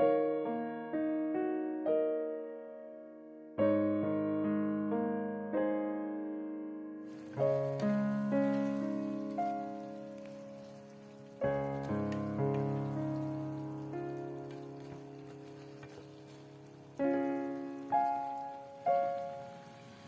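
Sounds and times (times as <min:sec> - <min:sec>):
piano music: 0:00.0 - 0:20.0
steady hiss: 0:07.1 - 0:20.0.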